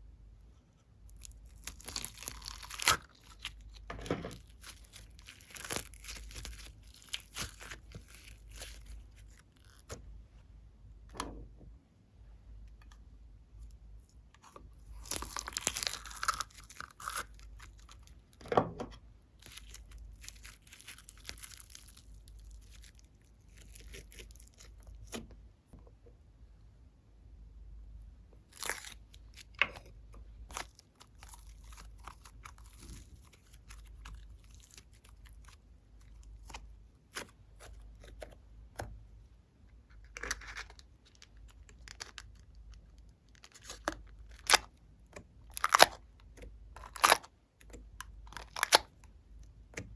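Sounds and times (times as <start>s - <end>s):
slime crackling and popping: 1.1s - 10.0s, 14.8s - 18.2s, 19.4s - 25.2s, 28.5s - 29.6s, 30.5s - 38.2s, 40.2s - 44.8s, 45.4s - 49.0s.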